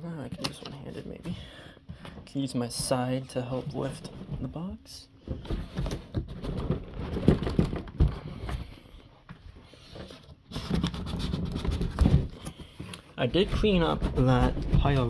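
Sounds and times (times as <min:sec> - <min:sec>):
cardboard box scraping and rustling: 0:09.8 - 0:15.0.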